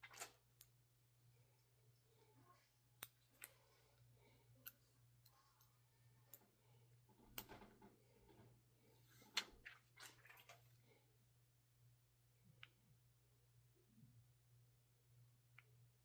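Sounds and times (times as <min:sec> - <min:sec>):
faint low hum: 0:00.1 - 0:16.0.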